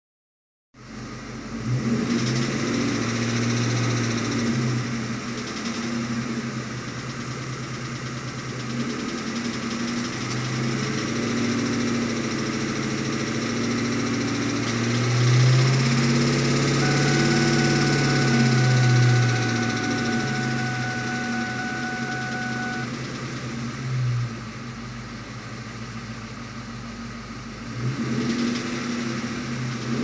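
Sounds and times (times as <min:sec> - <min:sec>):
car engine running: 0:00.8 - 0:28.3
rapid engine knock: 0:06.8 - 0:12.6
thin steady high tone: 0:16.8 - 0:22.9.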